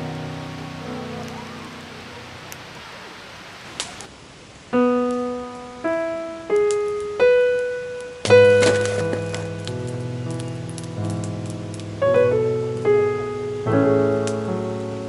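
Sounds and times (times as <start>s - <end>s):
slow piano music: 0.0s - 3.2s, 4.7s - 15.0s
faint hiss: 0.0s - 15.0s.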